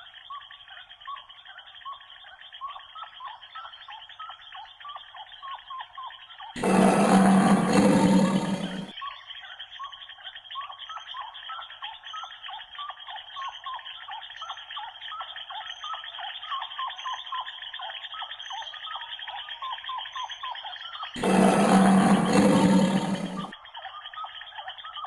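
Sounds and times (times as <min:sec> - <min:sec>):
high chirping animal calls: 0:06.4 - 0:09.6, 0:21.1 - 0:24.3.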